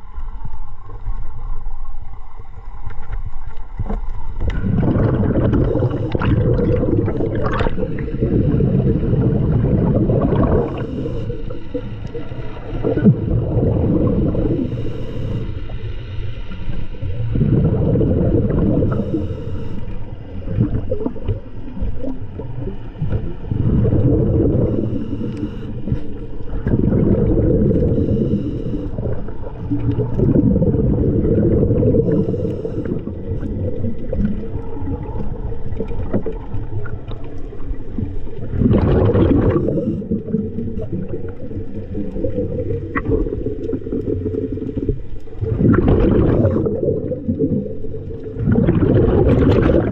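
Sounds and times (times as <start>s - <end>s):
exhaled bubbles rumbling: 0.0s - 49.9s
diver breathing underwater: 4.4s - 36.4s, 38.0s - 49.9s.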